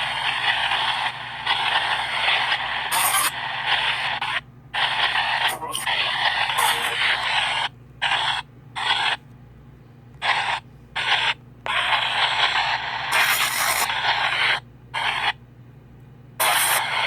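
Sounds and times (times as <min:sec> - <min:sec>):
radio static: 0:00.0 - 0:09.2, 0:10.2 - 0:15.4, 0:16.4 - 0:17.0
radio station snippets: 0:00.0 - 0:09.2.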